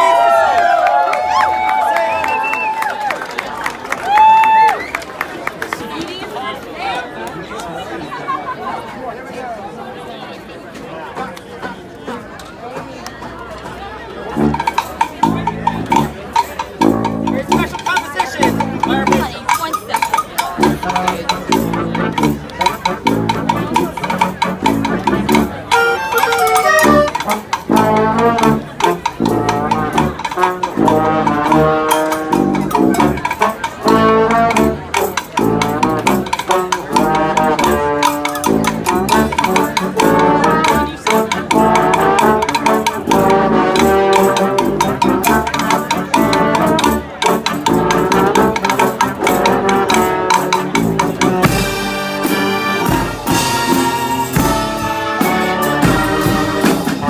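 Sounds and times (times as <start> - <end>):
brass band playing: 14.1 - 57.0
steady drum beat: 14.4 - 57.0.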